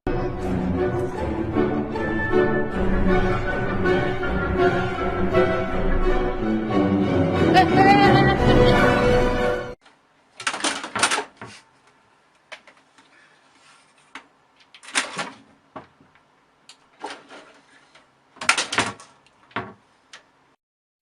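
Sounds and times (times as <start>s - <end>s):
knocks and clatters: 10.4s - 11.6s, 17.0s - 19.8s.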